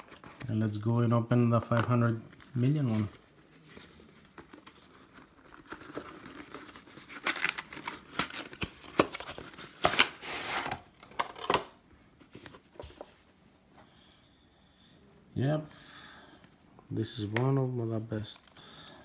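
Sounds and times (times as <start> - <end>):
packaging crinkling and rustling: 1.6 - 13.1.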